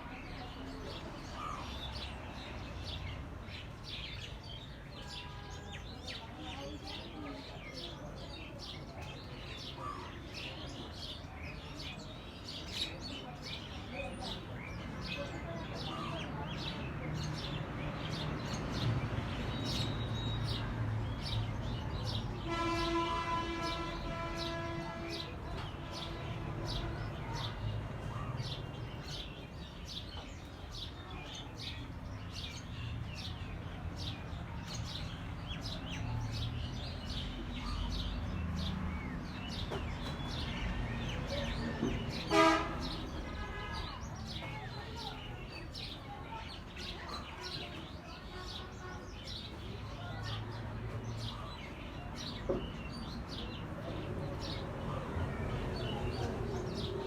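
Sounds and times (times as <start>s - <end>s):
small birds chirping: 0.0s - 57.0s
horn held note: 22.5s - 25.2s.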